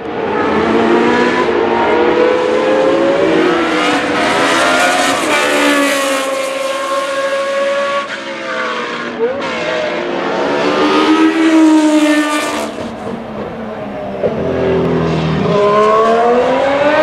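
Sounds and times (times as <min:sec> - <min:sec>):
racing car engine at high revs: 0:00.0 - 0:17.0.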